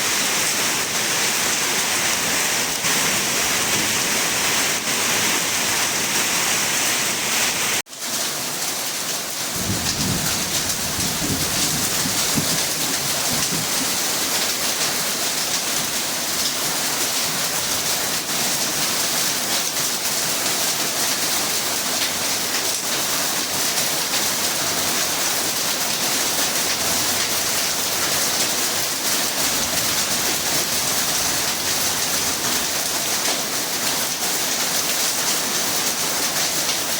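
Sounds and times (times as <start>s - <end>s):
heavy rain pouring: 0.0s - 36.9s
low thunder rumble: 9.6s - 14.0s.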